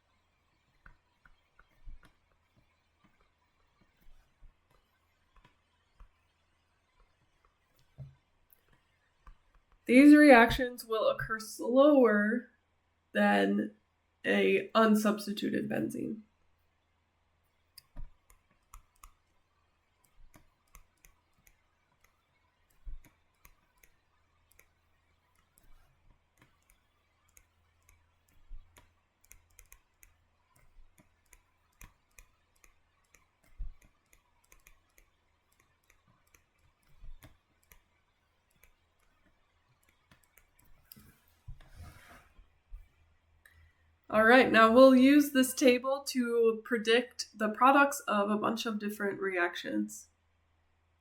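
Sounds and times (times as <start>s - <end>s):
stylus tapping on tablet screen: 17.8s - 19.4s, 20.0s - 42.1s.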